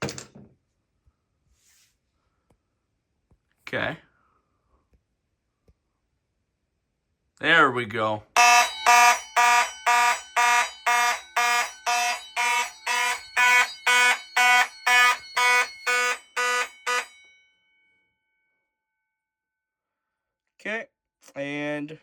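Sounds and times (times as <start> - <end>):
fire alarm horn pulsing: 8.4 - 17.4.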